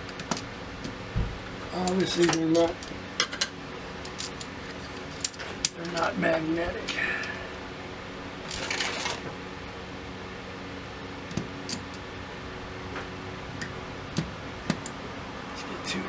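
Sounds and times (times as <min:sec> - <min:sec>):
background hum: 0:00.0 - 0:16.0
metal parts clicking: 0:01.8 - 0:04.5, 0:08.5 - 0:09.2.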